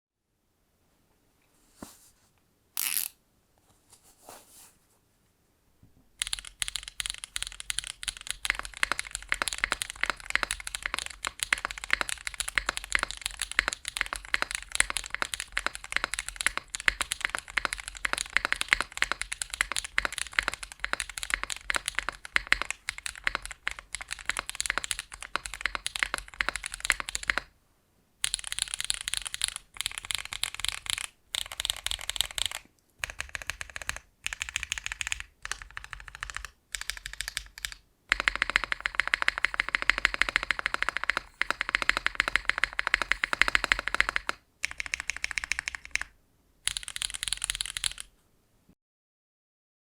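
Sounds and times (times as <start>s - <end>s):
fast typing on mechanical keyboard: 6.2s - 27.5s, 28.2s - 46.1s, 46.7s - 48.1s.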